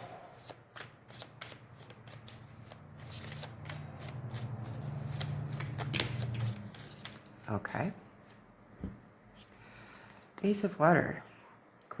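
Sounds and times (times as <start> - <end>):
cards being shuffled by hand: 0.0 - 7.5.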